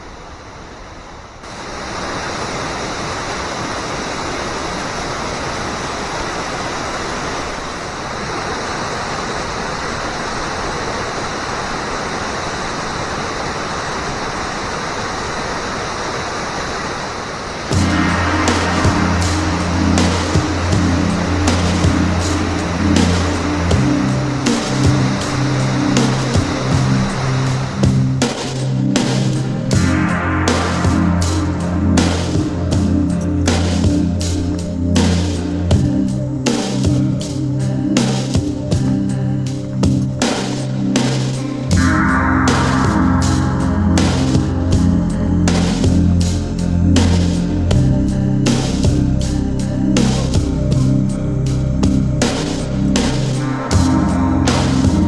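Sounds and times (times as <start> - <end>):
waterfall rushing: 1.4 - 47.7
percussion beat: 17.7 - 37.4, 51.8 - 55.0
held bass line: 17.7 - 55.0.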